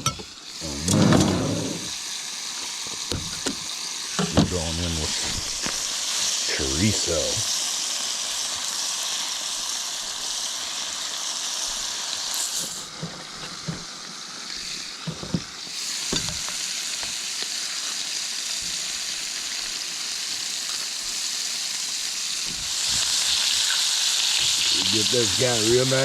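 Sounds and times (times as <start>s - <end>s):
food sizzling in a wok: 0.0s - 26.0s.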